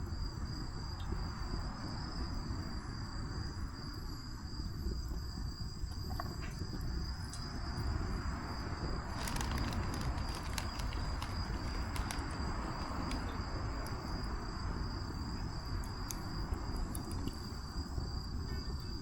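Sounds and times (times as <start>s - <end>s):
high insect trill: 0.0s - 19.0s
campfire crackling and popping: 8.8s - 17.6s.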